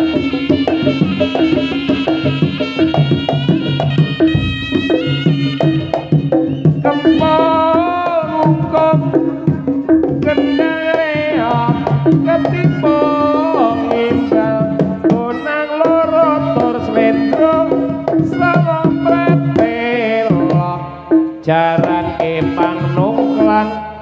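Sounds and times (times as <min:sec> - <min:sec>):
hand drum strokes: 0:00.0 - 0:23.7
gamelan music: 0:00.8 - 0:05.8.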